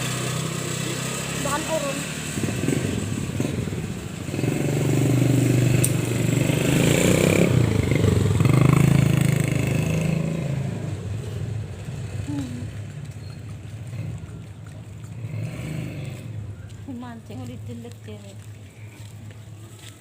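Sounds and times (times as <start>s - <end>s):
vehicle engine passing by: 0.0s - 20.0s.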